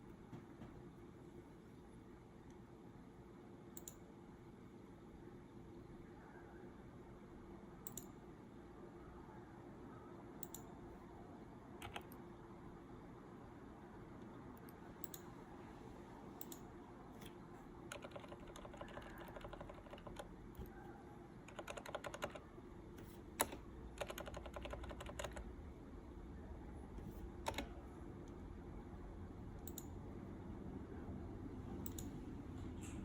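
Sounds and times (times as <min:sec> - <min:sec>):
computer keyboard typing: 0:11.8 - 0:12.2, 0:16.4 - 0:20.8, 0:21.4 - 0:25.5, 0:27.4 - 0:27.9, 0:29.6 - 0:30.0.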